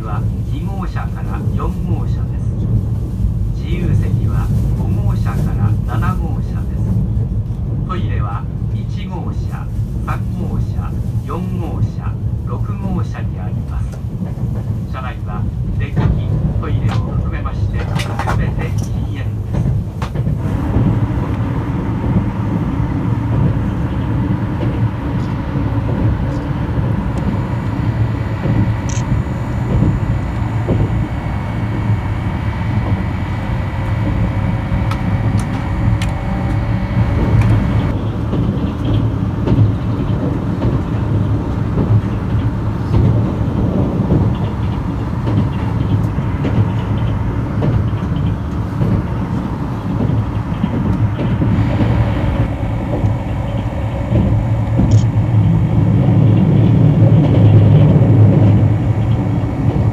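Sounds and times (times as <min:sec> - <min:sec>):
train wheels rumbling on rail: 0:00.0 - 0:59.9
faint high steady tone: 0:23.2 - 0:37.9.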